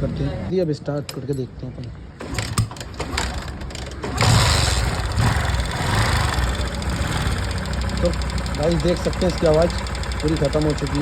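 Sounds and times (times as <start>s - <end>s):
motorcycle engine running: 4.2s - 11.0s.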